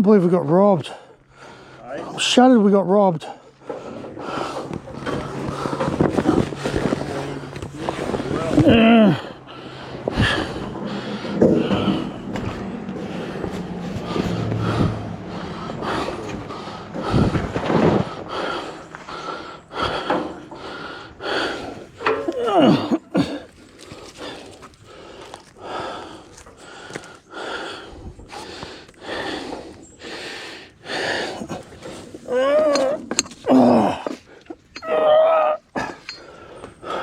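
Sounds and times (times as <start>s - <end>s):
person grunting: 7.2s - 9.4s, 22.1s - 23.5s, 32.3s - 34.2s, 34.8s - 36.0s.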